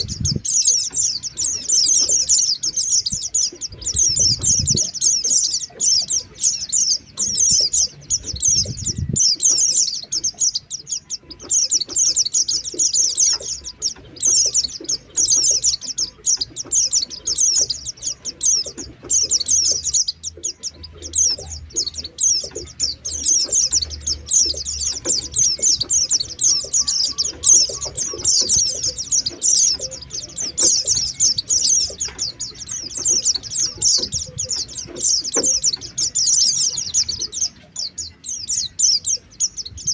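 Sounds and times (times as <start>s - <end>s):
birds chattering high-pitched chirps: 0.0s - 39.9s.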